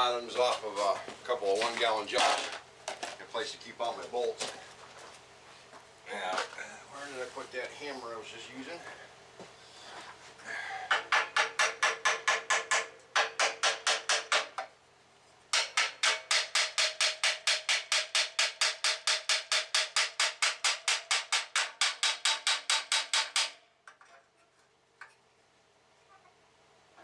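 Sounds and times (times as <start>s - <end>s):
hammer striking metal plate: 10.9s - 14.6s, 15.6s - 23.6s.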